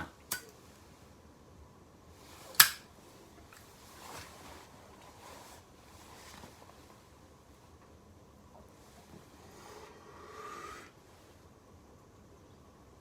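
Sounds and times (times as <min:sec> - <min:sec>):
sharp click: 0:00.3 - 0:00.5, 0:02.5 - 0:02.9
faint soft rustles: 0:02.1 - 0:08.0.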